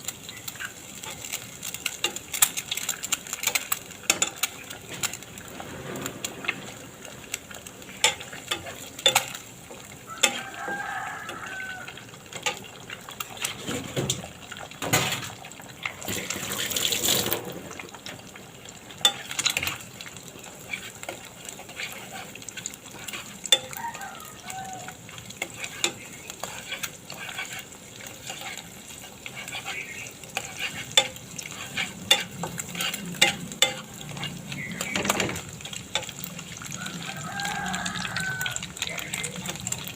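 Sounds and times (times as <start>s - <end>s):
rushing splash or sizzle: 0.0s - 39.9s
chicken calling: 10.0s - 12.0s, 23.7s - 25.1s, 36.7s - 39.4s.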